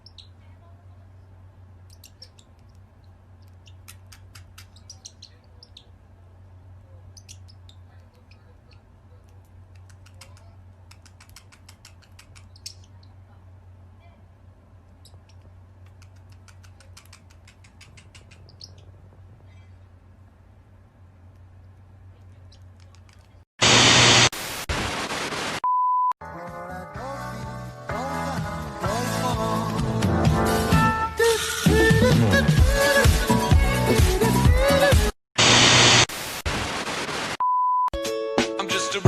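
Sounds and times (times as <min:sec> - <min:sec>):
small animal high-pitched chirps: 0:00.0 - 0:00.5, 0:01.9 - 0:02.8, 0:03.4 - 0:06.0, 0:11.3 - 0:13.2
steady low hum: 0:00.0 - 0:24.3.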